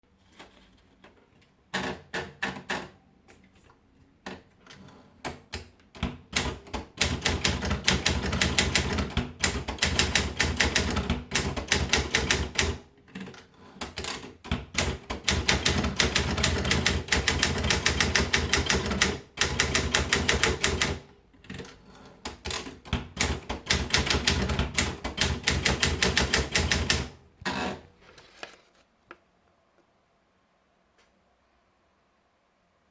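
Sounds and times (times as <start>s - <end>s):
manual typewriter keys clattering: 6.0s - 27.1s.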